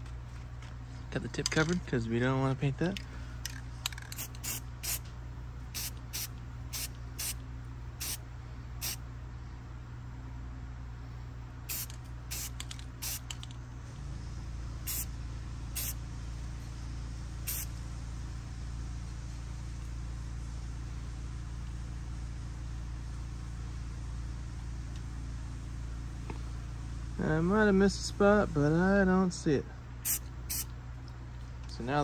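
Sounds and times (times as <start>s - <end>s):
steady low hum: 0.0s - 32.0s
aerosol spray can hissing: 4.1s - 5.0s, 5.8s - 7.4s, 8.0s - 8.2s, 11.7s - 13.4s, 14.9s - 15.1s, 15.8s - 16.0s, 17.4s - 17.7s, 30.0s - 30.7s.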